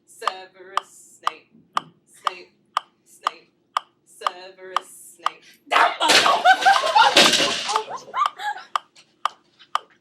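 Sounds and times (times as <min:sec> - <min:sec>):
sharp ticking: 0:00.2 - 0:05.4.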